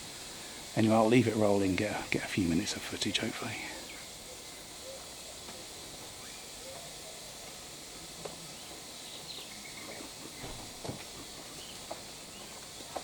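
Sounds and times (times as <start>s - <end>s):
steady outdoor hiss: 0.0s - 13.0s
faint high chirps: 3.8s - 7.5s, 8.4s - 10.7s.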